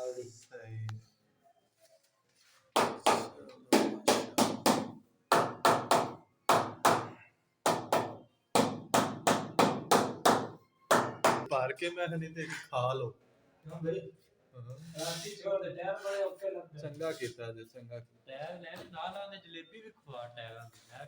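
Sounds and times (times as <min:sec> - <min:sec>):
hammer striking: 0:02.8 - 0:11.5.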